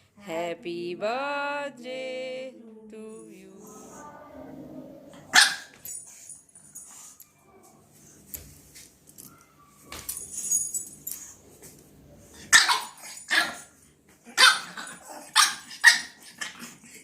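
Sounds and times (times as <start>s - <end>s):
puppy barking: 5.3s - 5.8s, 12.5s - 13.7s, 14.3s - 16.6s.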